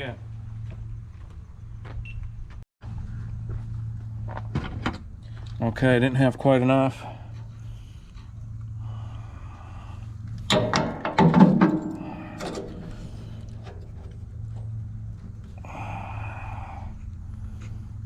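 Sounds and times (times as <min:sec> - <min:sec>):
low steady hum: 0:00.0 - 0:18.0
wrench clanking on metal: 0:10.5 - 0:13.9.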